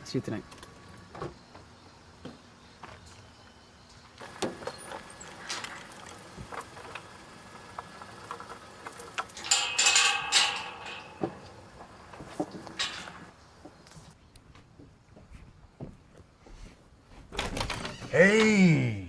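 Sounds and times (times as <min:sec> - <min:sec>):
keys jangling: 0:04.2 - 0:07.2, 0:07.8 - 0:11.6.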